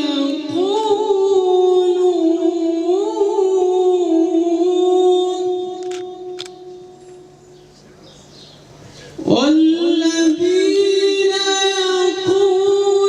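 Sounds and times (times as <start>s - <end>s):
man reciting melodically: 0.0s - 7.0s, 9.0s - 13.0s.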